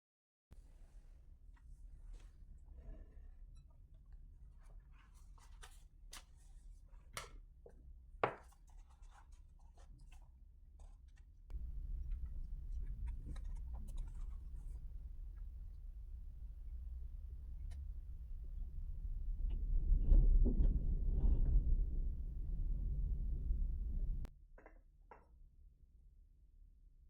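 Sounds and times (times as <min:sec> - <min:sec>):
paper scratching and tapping: 0:08.2 - 0:10.2, 0:12.0 - 0:14.8.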